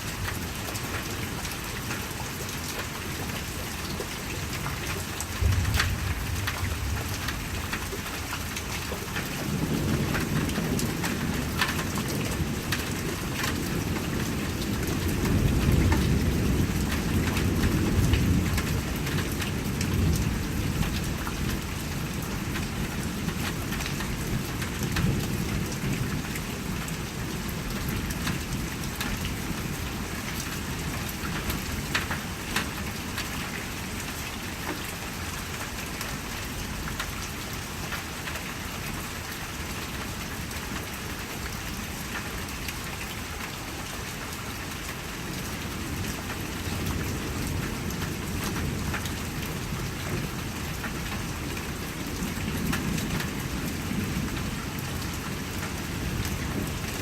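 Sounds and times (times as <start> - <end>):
raindrops ticking on surface: 0.0 - 57.0
steady rain falling: 0.0 - 57.0
low thunder rumbling: 5.3 - 7.8.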